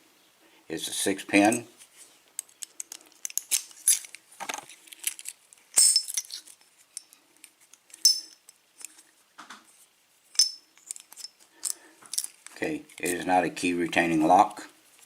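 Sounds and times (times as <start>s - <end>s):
sharp metal clinks: 5.8s - 6.3s, 8.0s - 8.4s, 10.4s - 11.4s.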